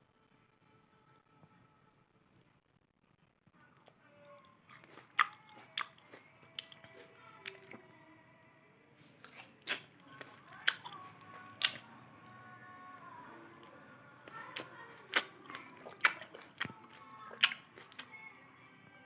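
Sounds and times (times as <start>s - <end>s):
wet chewing: 3.8s - 7.8s, 9.2s - 12.5s, 13.4s - 18.3s.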